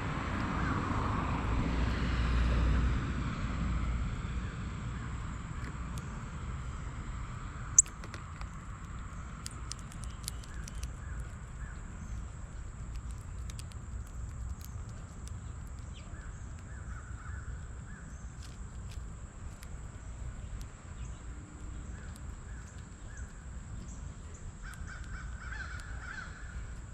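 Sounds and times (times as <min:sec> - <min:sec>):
steady low rumble: 0:02.8 - 0:26.9
light ticks: 0:07.8 - 0:12.2, 0:12.9 - 0:16.7, 0:24.7 - 0:26.0
wild birds calling: 0:19.9 - 0:26.8.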